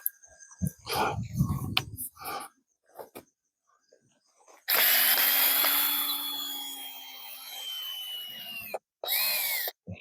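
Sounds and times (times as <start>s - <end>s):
cordless drill driving a screw: 4.7s - 9.8s.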